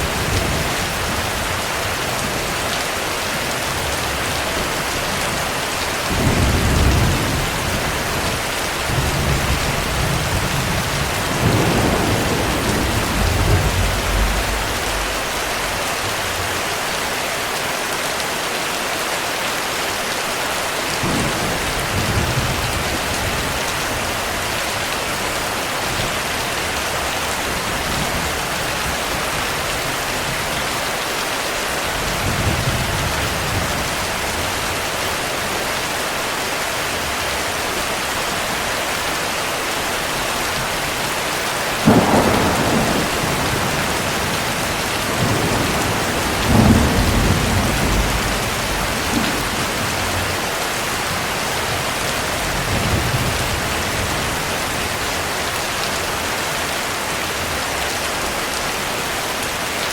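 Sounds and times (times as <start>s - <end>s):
heavy rain: 0.0s - 59.9s
thunder rumbling: 6.1s - 16.6s, 41.8s - 55.1s.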